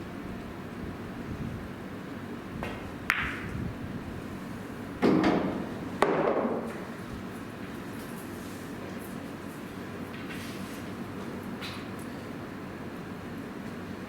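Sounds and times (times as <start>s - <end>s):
pool balls knocking: 2.7s - 3.5s, 5.0s - 6.7s.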